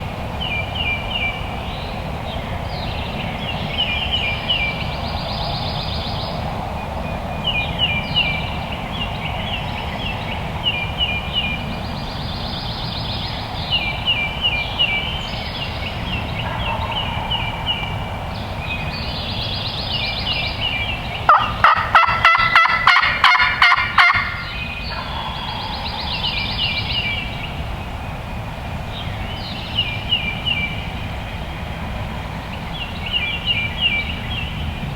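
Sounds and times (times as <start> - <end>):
songbirds singing: 0.0 - 34.9
wild turkey gobbling: 16.1 - 18.1, 21.2 - 26.8.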